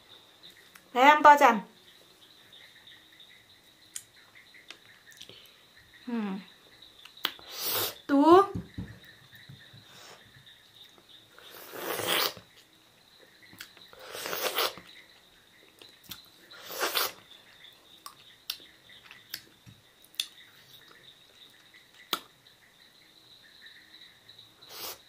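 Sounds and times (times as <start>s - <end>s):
person chewing wetly: 15.6s - 17.2s.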